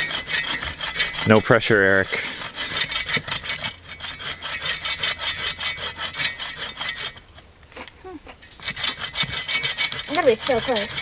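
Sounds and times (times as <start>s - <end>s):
hand saw cutting log: 0.0s - 7.5s, 8.5s - 11.0s.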